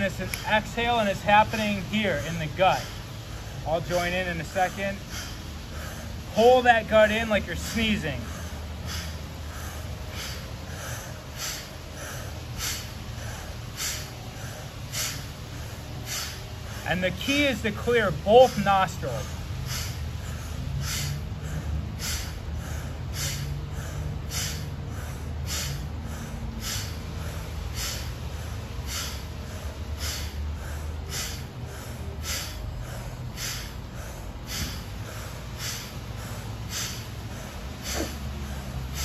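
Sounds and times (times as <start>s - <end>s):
forceful nasal exhales: 7.6s - 16.8s, 18.4s - 39.0s.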